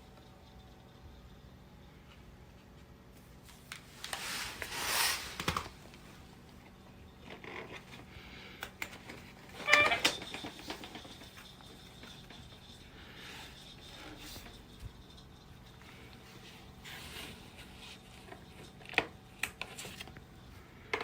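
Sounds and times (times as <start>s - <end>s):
rustling: 3.4s - 6.4s.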